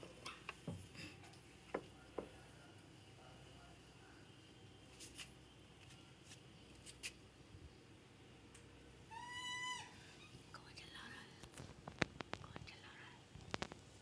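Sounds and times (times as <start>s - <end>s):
high-pitched monkey call: 9.1s - 10.4s.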